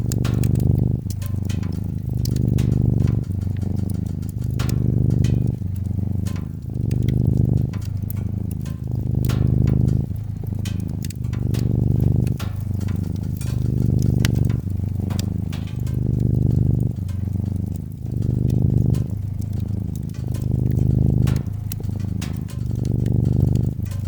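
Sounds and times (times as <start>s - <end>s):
cat purring: 0.0s - 24.0s
wood fire crackling: 0.0s - 24.0s.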